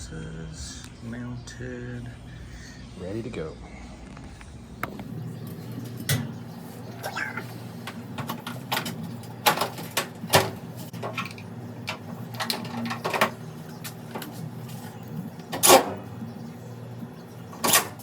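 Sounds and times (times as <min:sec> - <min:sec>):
steady low hum: 0:00.0 - 0:18.0
clicks and knocks of tools: 0:07.8 - 0:14.4.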